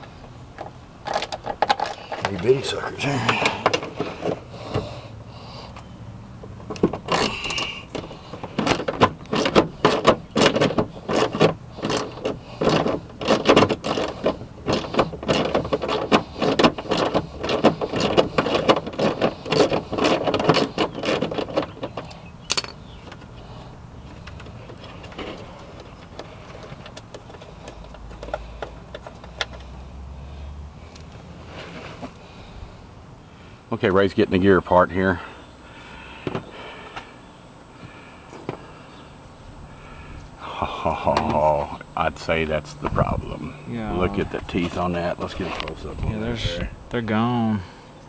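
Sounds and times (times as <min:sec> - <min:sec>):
clicks and rattles of hard parts: 0:00.0 - 0:02.5, 0:03.2 - 0:04.9, 0:06.6 - 0:23.4, 0:24.0 - 0:29.7.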